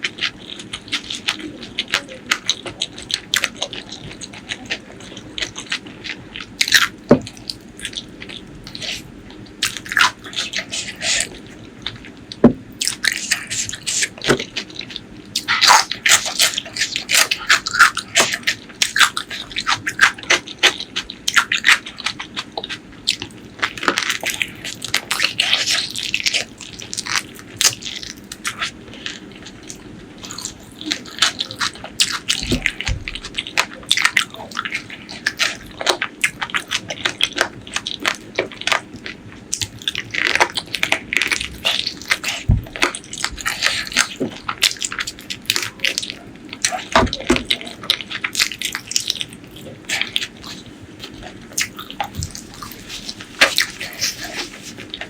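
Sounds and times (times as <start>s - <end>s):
person chewing and crunching food: 0.0s - 55.0s.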